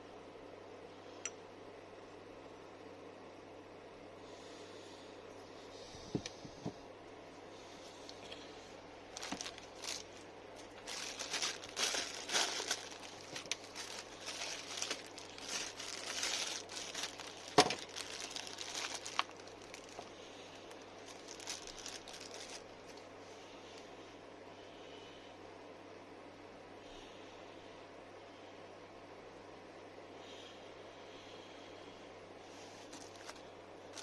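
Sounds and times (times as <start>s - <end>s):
crinkling and rustling: 7.9s - 23.1s, 32.5s - 34.0s.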